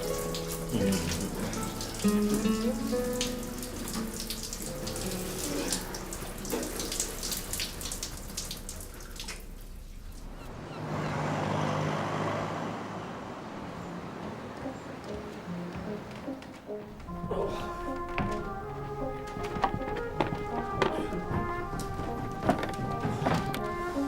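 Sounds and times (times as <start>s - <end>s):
soft background music: 0.0s - 8.0s, 13.8s - 24.0s
running water splashing: 0.0s - 10.5s, 14.0s - 24.0s.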